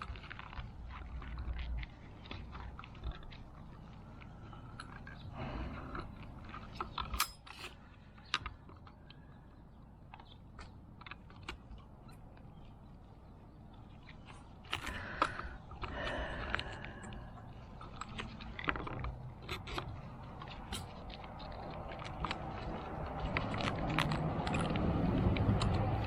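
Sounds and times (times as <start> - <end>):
clicks and knocks of parts handled: 0.0 - 9.3, 14.0 - 26.0
scraping and rustling: 10.2 - 26.0.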